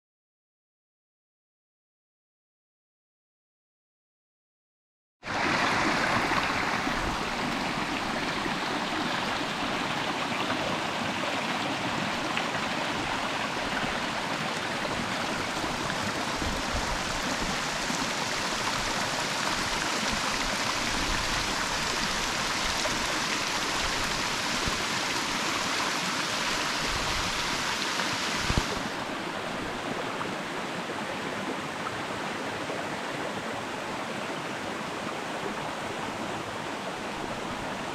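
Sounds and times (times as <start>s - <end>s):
waterfall rushing: 5.3s - 30.6s.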